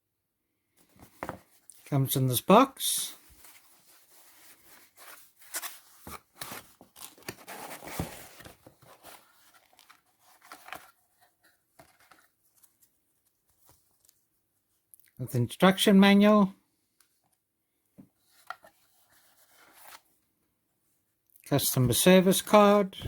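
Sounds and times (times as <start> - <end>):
packaging rustling and tearing: 3.4 - 11.0.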